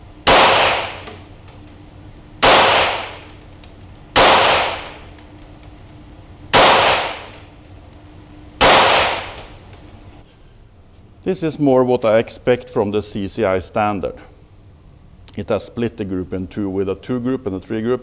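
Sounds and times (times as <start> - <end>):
pistol shots echoing: 0.3 - 1.1, 2.4 - 3.3, 4.2 - 5.1, 6.6 - 7.4, 8.6 - 9.5.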